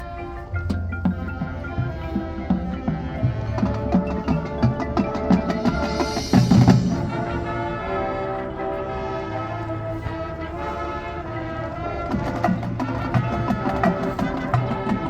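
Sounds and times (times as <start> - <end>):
drumline hits: 0.0 - 8.8, 12.0 - 15.0
brass and wind chords: 0.0 - 15.0.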